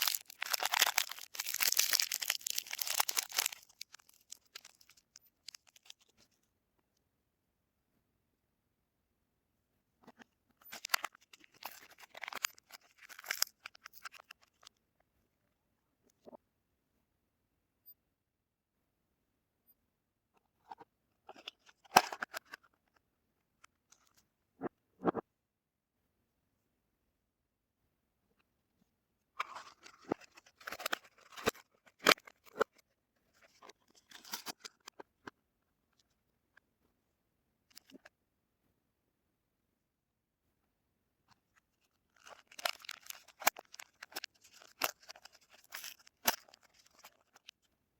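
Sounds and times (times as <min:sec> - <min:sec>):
wrapper tearing and crinkling: 0:00.0 - 0:05.9, 0:10.8 - 0:14.3, 0:42.2 - 0:47.4.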